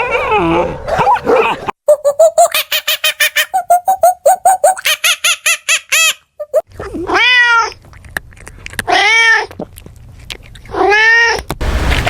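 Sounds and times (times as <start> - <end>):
cat meowing: 6.8 - 7.8, 8.9 - 9.6.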